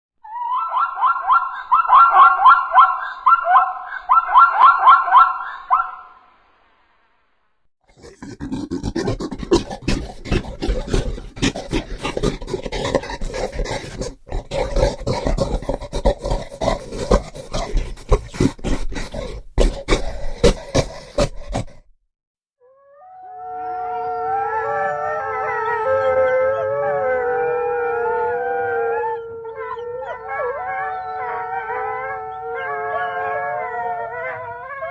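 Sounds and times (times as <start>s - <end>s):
dogs howling together: 0.3s - 6.0s, 22.8s - 34.9s
harsh crackling growling: 7.9s - 21.9s.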